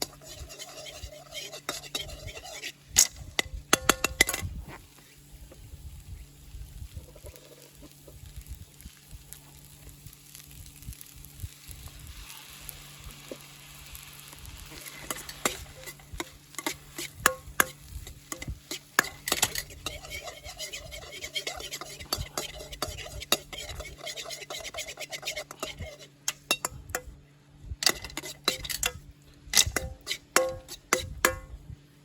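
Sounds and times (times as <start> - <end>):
utensil scraping a wok: 0.0 - 5.3, 12.1 - 27.1, 27.8 - 31.5
food frying in a wok: 0.0 - 31.6.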